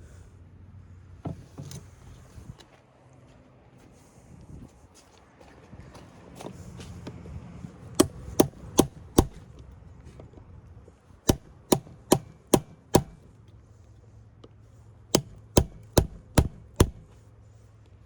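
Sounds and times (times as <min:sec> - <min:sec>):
hammer striking chisel: 0:08.0 - 0:09.4, 0:11.3 - 0:13.3, 0:15.1 - 0:17.1.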